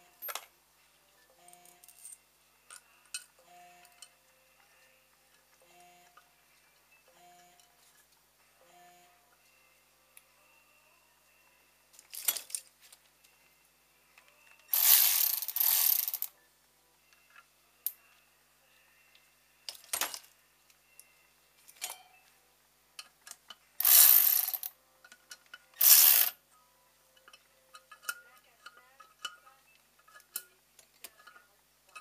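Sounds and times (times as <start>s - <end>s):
fast ratchet clicking: 14.7s - 16.3s, 23.8s - 24.7s, 25.8s - 26.4s.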